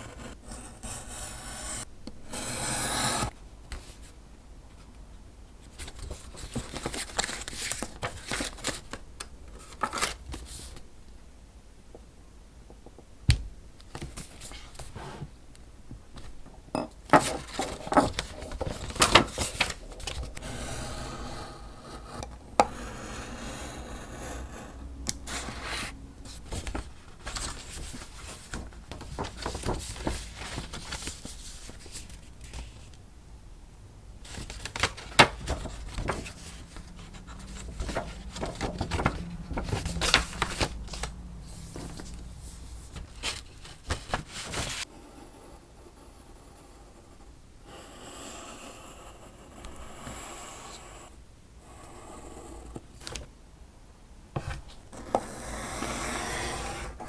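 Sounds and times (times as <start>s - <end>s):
paper rustling and crinkling: 5.7s - 9.0s, 9.6s - 10.8s, 17.2s - 20.4s, 26.3s - 32.9s, 34.2s - 44.9s.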